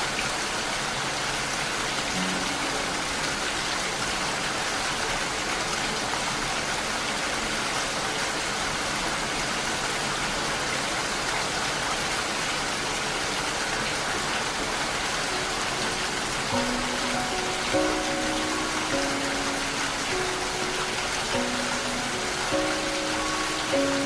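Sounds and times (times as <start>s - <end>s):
rain falling: 0.0s - 24.0s.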